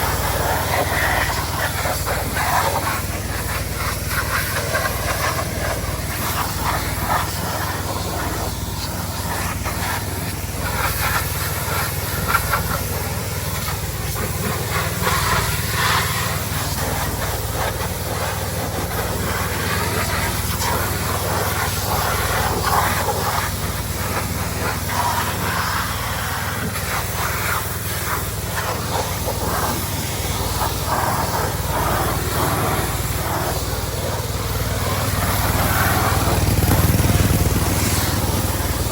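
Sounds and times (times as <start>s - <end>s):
pressure washer spraying hiss: 0.0s - 38.9s
motor humming: 27.9s - 38.9s.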